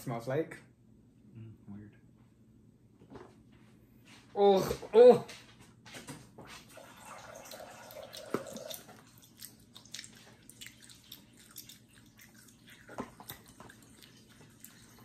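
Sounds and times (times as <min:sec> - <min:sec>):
person chewing gummy candy: 0:07.9 - 0:15.0.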